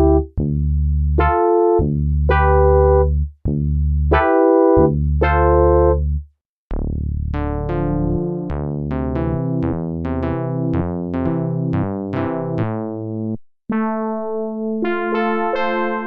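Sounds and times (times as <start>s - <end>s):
synthesizer notes: 0.0s - 0.2s, 1.2s - 3.1s, 4.1s - 6.0s.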